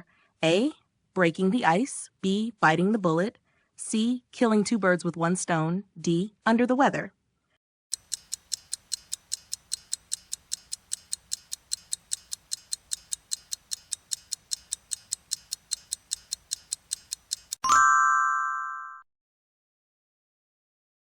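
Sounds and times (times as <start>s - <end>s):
fast timer ticking: 7.9s - 17.6s.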